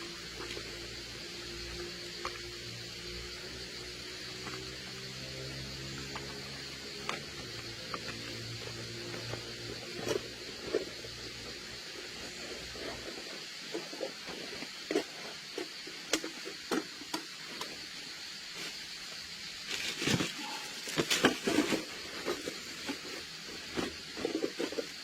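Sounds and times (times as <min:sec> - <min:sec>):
camping gear rustling and knocking: 0:06.0 - 0:18.0, 0:19.7 - 0:25.0.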